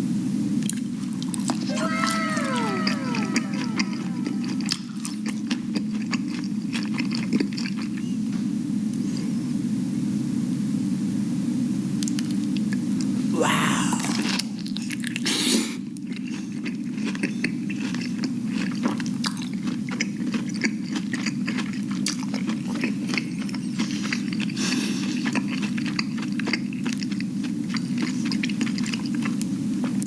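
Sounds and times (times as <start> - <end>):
chewing crunchy food: 0.6 - 8.4, 13.8 - 30.0.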